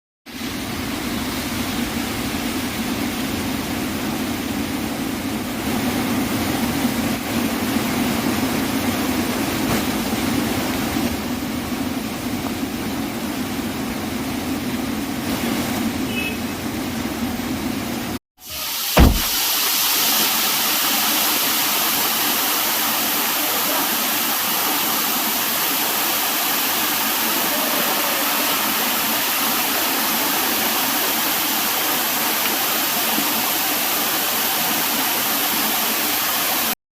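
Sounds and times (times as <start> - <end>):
rushing mountain stream: 18.0 - 36.8.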